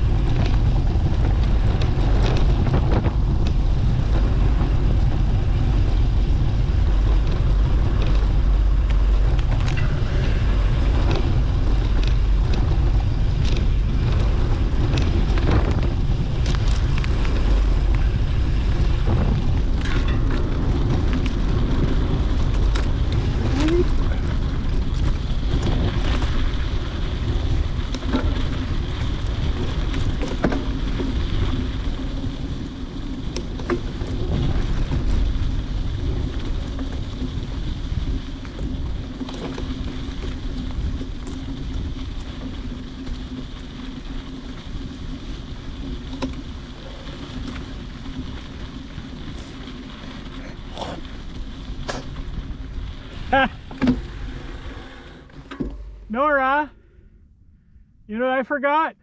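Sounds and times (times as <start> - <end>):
faint clicks and ticks: 0.0 - 54.0
wind buffeting microphone: 0.0 - 58.1.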